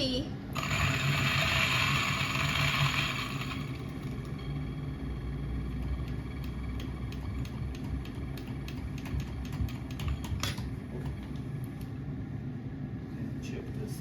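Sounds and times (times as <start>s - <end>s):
coffee grinding: 0.6s - 4.2s
coffee grinder motor humming: 0.6s - 8.2s.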